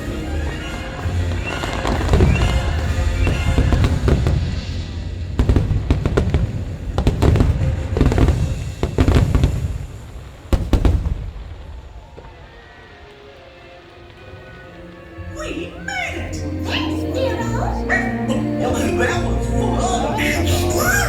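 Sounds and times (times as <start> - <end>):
fireworks booming: 0.0 - 16.4
fireworks crackling: 0.0 - 21.0.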